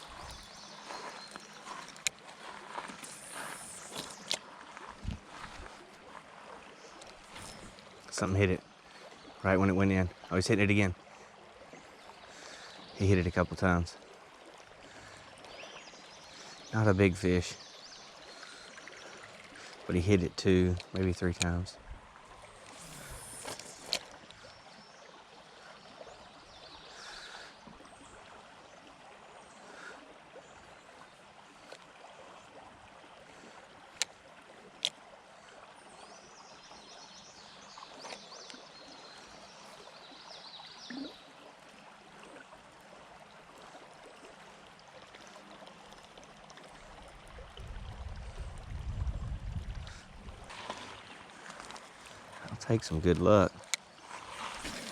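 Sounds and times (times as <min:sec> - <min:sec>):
river water flowing: 0:00.0 - 0:54.9.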